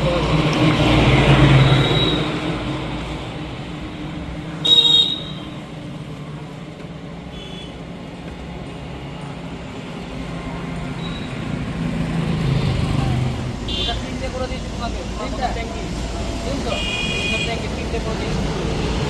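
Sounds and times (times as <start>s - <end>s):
steady traffic noise: 0.0s - 19.0s
vehicle passing: 9.9s - 16.7s.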